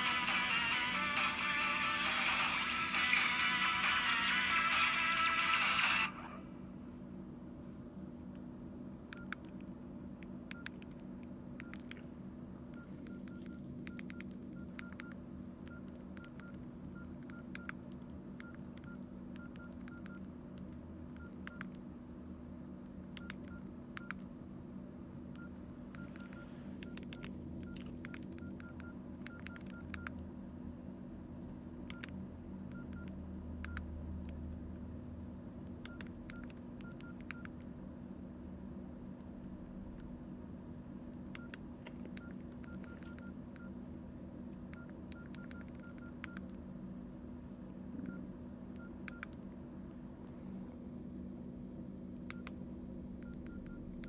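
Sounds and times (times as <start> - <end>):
phone keypad clicks with beeps: 9.1 - 9.6, 12.7 - 20.3, 23.2 - 24.3, 25.3 - 30.2, 31.9 - 33.9, 35.8 - 37.6, 41.2 - 43.8, 44.7 - 46.6, 48.0 - 49.4, 52.2 - 52.6, 53.2 - 54.0.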